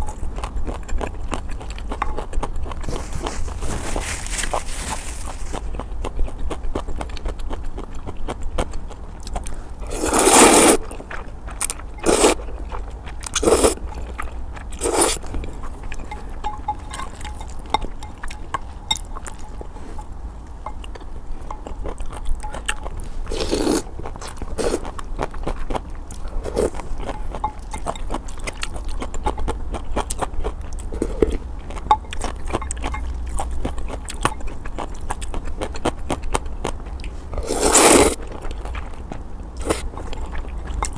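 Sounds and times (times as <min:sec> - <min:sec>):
wet chewing clicks: 0:00.0 - 0:03.6, 0:05.3 - 0:40.9
slurping noodles: 0:09.8 - 0:10.9, 0:12.0 - 0:12.4, 0:13.4 - 0:13.8, 0:14.8 - 0:15.3, 0:23.3 - 0:24.8, 0:37.4 - 0:38.2.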